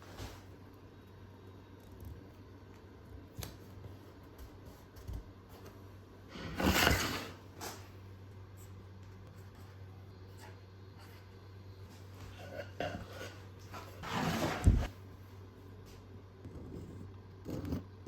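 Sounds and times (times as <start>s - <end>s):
low steady hum: 0.0s - 18.0s
scraping or rubbing: 12.4s - 14.9s.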